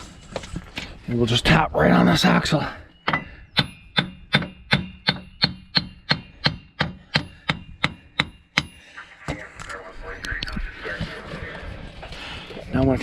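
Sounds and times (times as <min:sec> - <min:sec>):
hammer tapping on metal shaft: 0:03.1 - 0:08.8.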